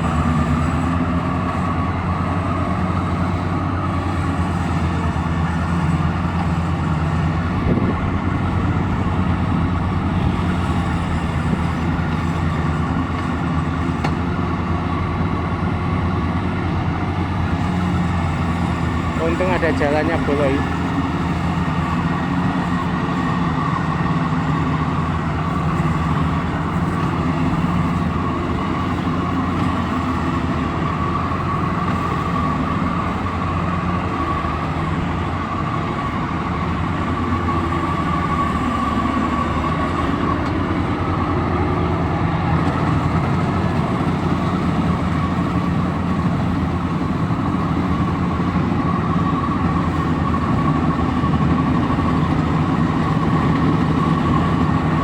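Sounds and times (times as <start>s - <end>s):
combine harvester engine hum: 0.0s - 55.0s
high machinery whine: 0.0s - 55.0s.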